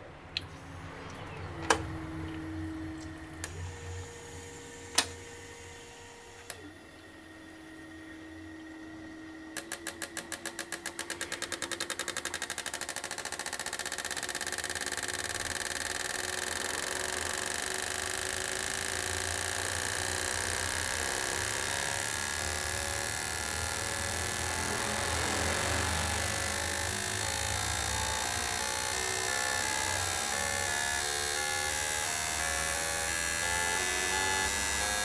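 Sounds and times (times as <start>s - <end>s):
fuel injector solenoid clicks: 1.1s - 4.0s, 4.9s - 5.3s.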